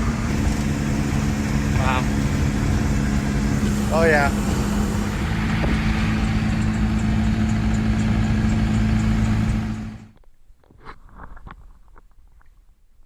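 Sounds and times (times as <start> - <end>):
engine running with low hum: 0.0 - 10.2.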